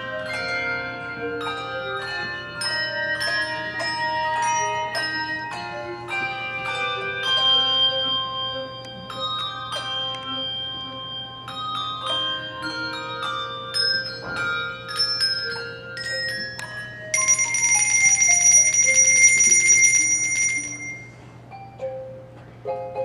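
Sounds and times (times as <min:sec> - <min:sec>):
handbell choir ringing: 0:00.0 - 0:21.3
shimmering sustained bell ring: 0:00.0 - 0:21.4.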